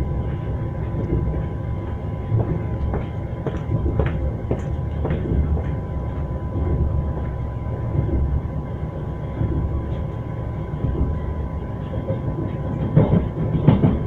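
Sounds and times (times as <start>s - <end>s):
low train rumble: 0.0s - 14.0s
train wheels knocking on rail joints: 0.8s - 7.3s, 12.4s - 14.0s.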